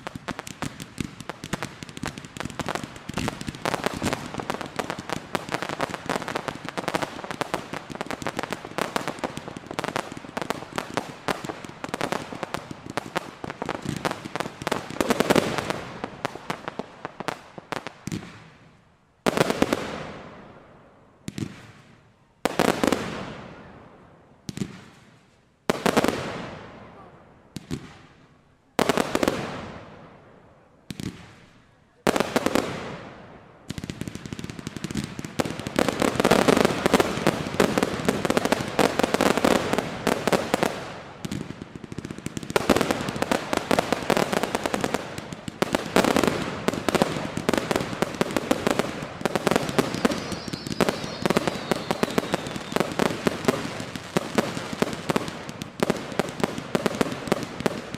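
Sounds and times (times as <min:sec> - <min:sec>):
fireworks crackling barrage: 0:00.0 - 0:57.9
firework shells bursting: 0:46.2 - 0:54.3.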